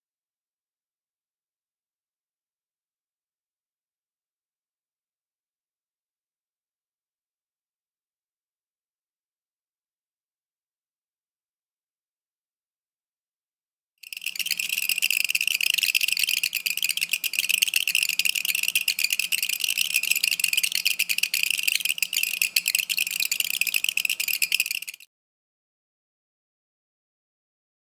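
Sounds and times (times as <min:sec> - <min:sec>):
beads shrieking on hot pan: 0:14.0 - 0:25.0.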